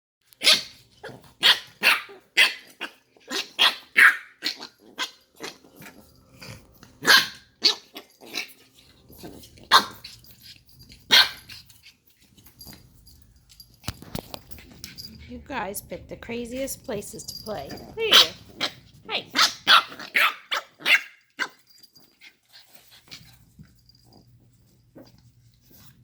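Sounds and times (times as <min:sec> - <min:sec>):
puppies barking: 0:00.4 - 0:11.8, 0:17.3 - 0:21.8.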